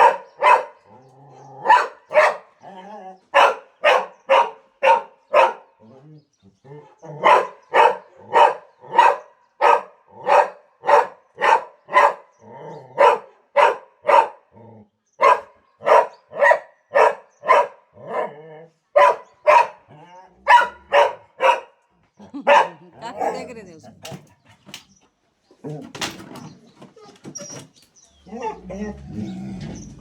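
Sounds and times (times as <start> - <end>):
dog barking: 0.0 - 0.9, 1.6 - 2.6, 3.3 - 5.8, 7.2 - 14.5, 15.2 - 24.3.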